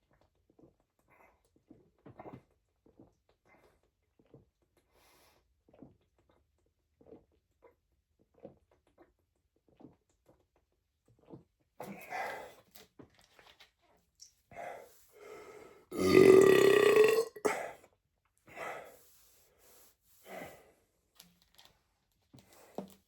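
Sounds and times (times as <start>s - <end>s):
man belching: 15.9s - 17.6s.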